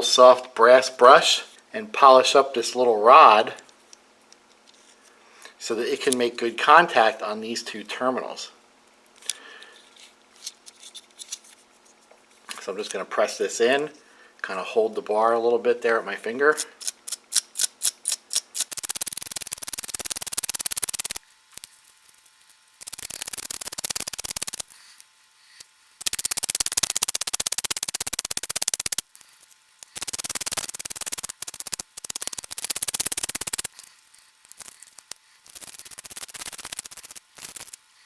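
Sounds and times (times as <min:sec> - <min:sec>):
wire brush scrubbing metal: 0:18.6 - 0:38.0.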